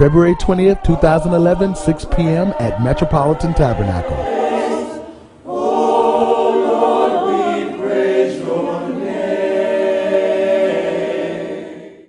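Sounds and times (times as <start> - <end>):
choir singing a cappella: 0.0 - 12.0.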